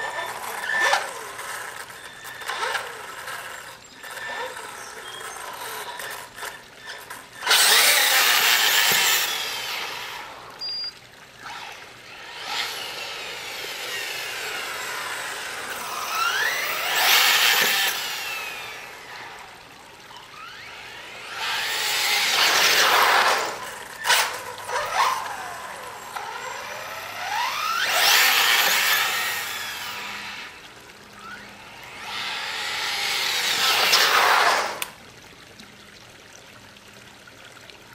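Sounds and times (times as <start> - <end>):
electric motor whining: 0.0 - 10.8, 11.4 - 35.0.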